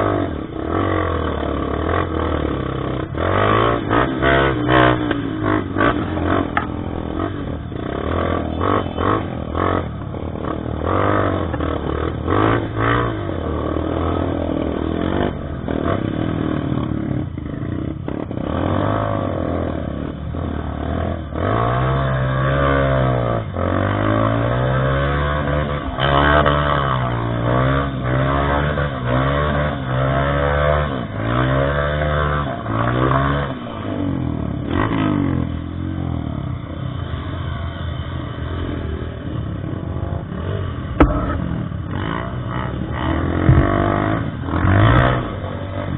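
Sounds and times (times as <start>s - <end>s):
motorcycle engine revving: 0.0s - 45.9s
knocks and clatter from bike: 5.8s - 6.8s, 43.0s - 44.1s.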